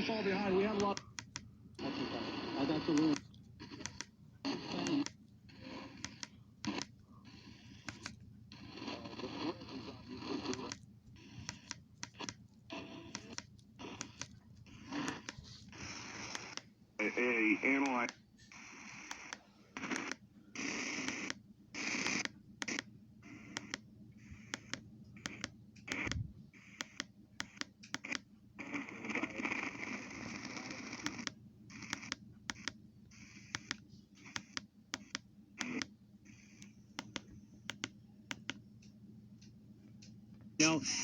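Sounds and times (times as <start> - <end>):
sharp clicks: 0.7 - 1.9, 2.9 - 8.3, 9.6 - 16.7, 17.7 - 28.3, 29.6 - 40.2
radio static hiss: 1.8 - 6.8, 12.2 - 23.8, 40.6 - 41.0.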